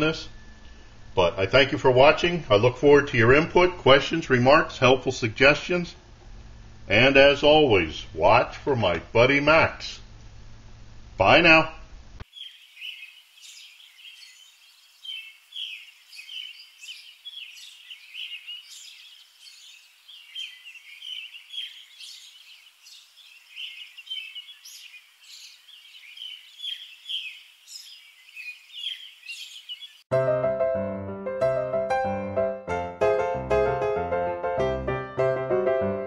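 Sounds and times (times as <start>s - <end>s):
birds chirping and singing: 12.2s - 30.1s.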